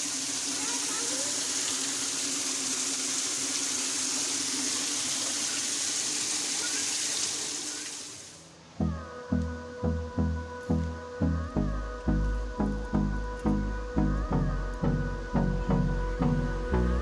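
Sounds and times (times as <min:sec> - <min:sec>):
water streaming from shower head: 0:00.0 - 0:08.6
music with steady beat: 0:08.8 - 0:17.0.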